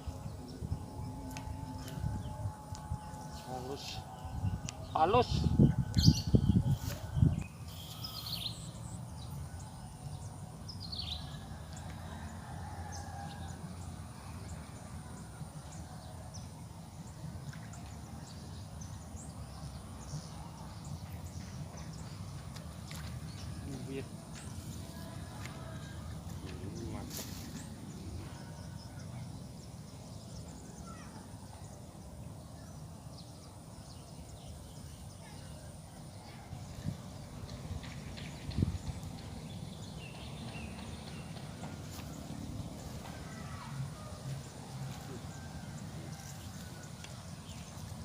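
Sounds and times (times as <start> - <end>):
steady low rumble: 0.0 - 7.7, 36.2 - 48.0
steady low hum: 0.0 - 48.0
faint bird chirps: 5.8 - 8.8.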